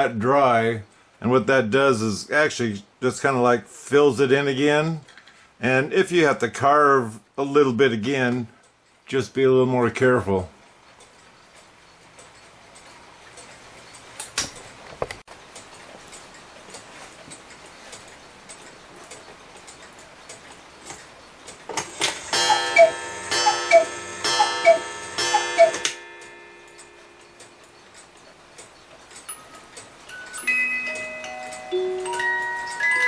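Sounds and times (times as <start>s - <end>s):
clock ticking: 15.4s - 33.0s
cuckoo call from bellows pipes: 22.3s - 25.9s.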